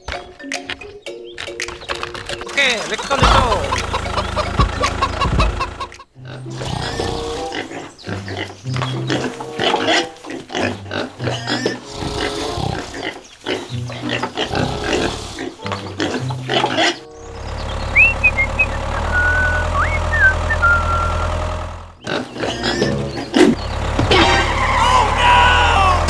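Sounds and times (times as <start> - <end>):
background music: 0.0 - 21.2, 21.9 - 26.0
pigs squealing and grunting: 2.5 - 26.0
high whistling glides: 17.1 - 21.6.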